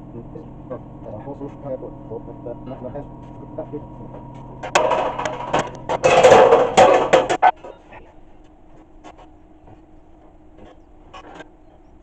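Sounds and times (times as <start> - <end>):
low steady hum: 0.0 - 12.0
metal clattering and scraping: 2.6 - 8.0.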